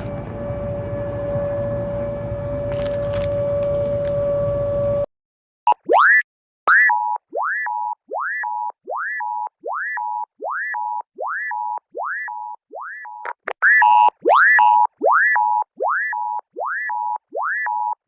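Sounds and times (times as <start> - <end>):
emergency alarm whoop and beep: 6.0 - 18.0.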